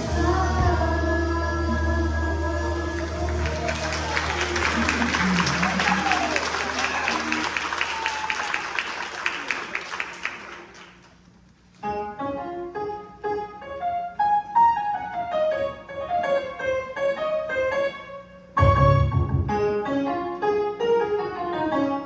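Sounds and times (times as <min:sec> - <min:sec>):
piano playing melody and chords: 0:00.0 - 0:07.5, 0:11.8 - 0:22.0
applause: 0:02.8 - 0:11.3.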